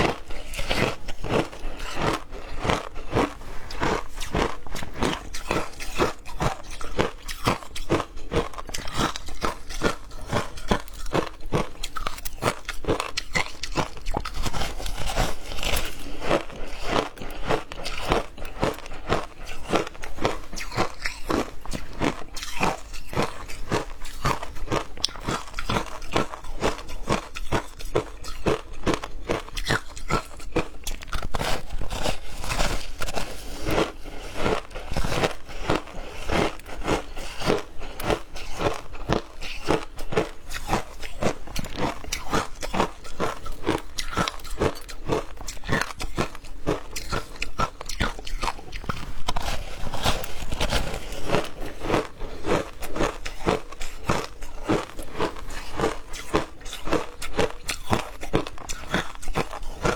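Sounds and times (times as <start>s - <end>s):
ice crunching between teeth: 0.0s - 59.9s.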